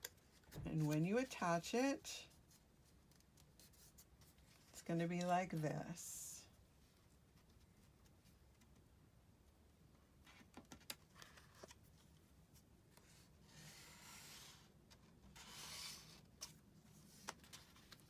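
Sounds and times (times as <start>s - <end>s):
paper sliding on paper: 15.4s - 16.2s.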